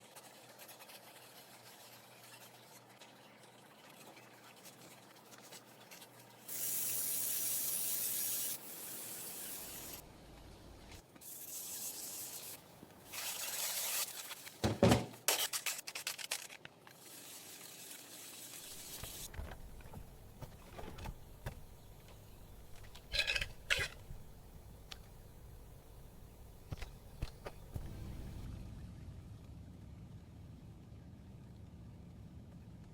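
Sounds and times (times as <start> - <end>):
rubbing and sanding: 0.0 - 10.0, 11.2 - 14.6
spray hiss: 6.5 - 10.0.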